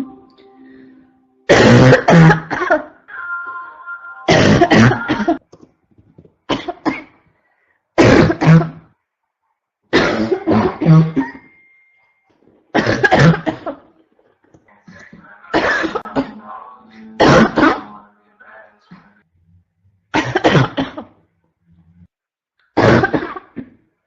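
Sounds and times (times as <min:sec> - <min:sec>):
woman's barking cough: 0:01.5 - 0:03.0, 0:04.3 - 0:05.4, 0:06.5 - 0:07.2, 0:08.0 - 0:08.9, 0:09.9 - 0:11.4, 0:12.7 - 0:13.9, 0:15.6 - 0:16.4, 0:17.2 - 0:17.9, 0:20.1 - 0:21.2, 0:22.8 - 0:23.8.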